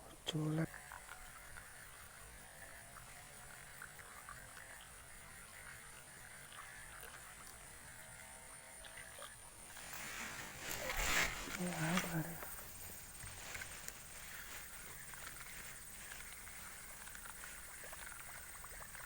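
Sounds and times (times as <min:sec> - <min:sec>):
faint frogs croaking: 0:00.0 - 0:19.0.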